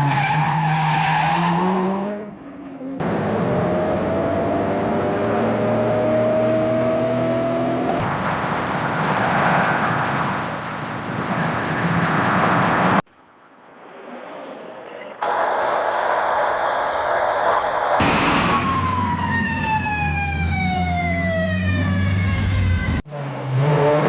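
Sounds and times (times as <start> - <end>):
car engine: 0.0 - 24.0
rough noisy rush: 8.0 - 18.9.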